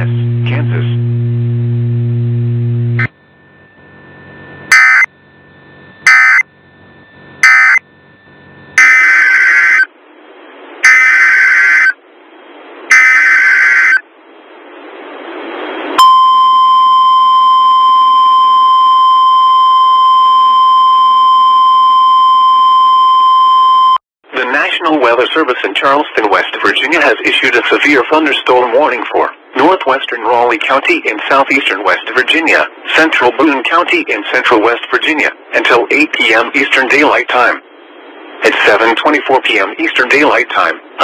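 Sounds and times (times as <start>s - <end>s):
low hum: 0.0s - 24.0s
high single-pitch alarm tone: 3.0s - 9.9s, 10.8s - 12.0s, 12.9s - 14.0s, 16.0s - 24.0s
warbling data bursts: 4.7s - 5.1s, 6.0s - 6.5s, 7.4s - 7.8s, 8.8s - 9.9s, 10.8s - 12.0s, 12.9s - 14.0s.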